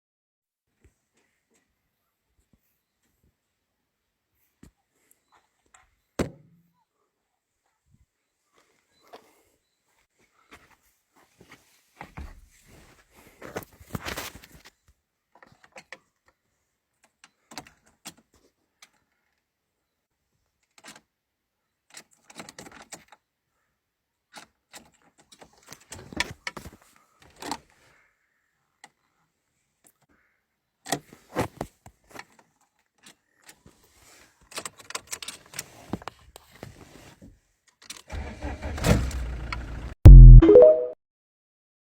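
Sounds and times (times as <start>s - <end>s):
engine starter cranking: 38.1s - 39.9s
loud engine burst: 38.2s - 40.4s.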